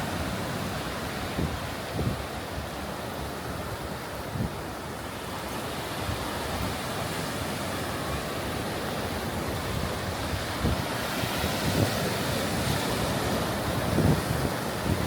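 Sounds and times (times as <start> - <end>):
surf washing onto beach: 0.0 - 15.0
wind buffeting microphone: 0.2 - 2.8, 9.1 - 15.0.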